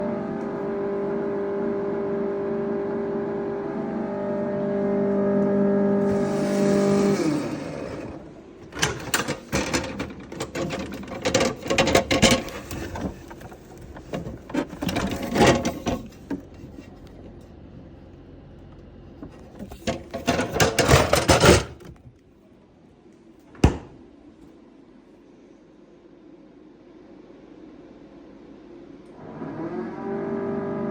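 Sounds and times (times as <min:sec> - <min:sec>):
refrigerator humming: 0:03.2 - 0:24.5
knocking and rattling: 0:06.0 - 0:17.0, 0:19.2 - 0:22.1.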